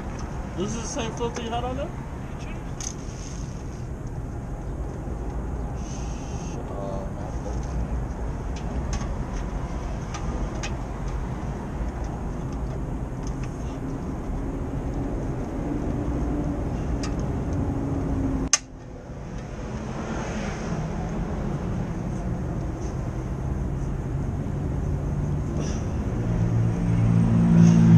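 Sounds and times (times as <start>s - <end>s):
sharp click: 18.5s - 18.7s.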